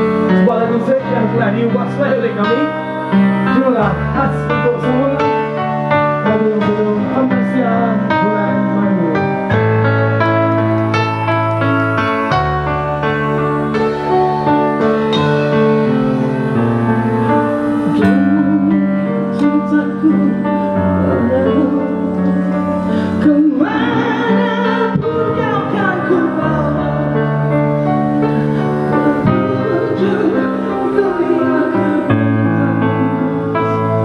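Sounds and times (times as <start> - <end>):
person singing with vibrato: 0.0 - 9.6, 17.2 - 34.0
live band playing slow song: 0.0 - 34.0.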